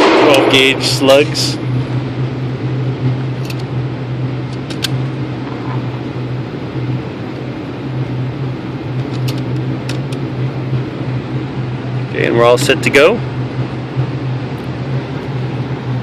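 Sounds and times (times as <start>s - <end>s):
ventilation hum: 0.0s - 16.0s
shotgun shells loading clicks: 4.5s - 4.9s.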